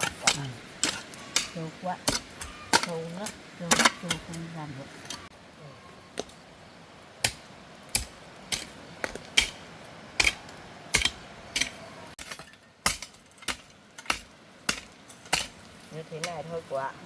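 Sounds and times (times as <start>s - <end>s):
metal tool striking stony soil: 0.0s - 4.4s, 7.2s - 9.6s, 10.2s - 16.6s.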